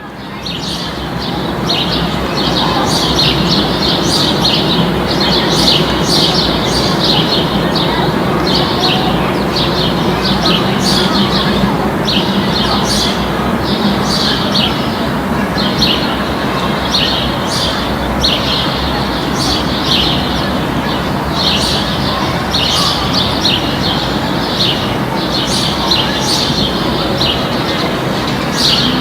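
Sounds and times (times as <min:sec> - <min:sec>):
small birds chirping: 0:00.0 - 0:29.0.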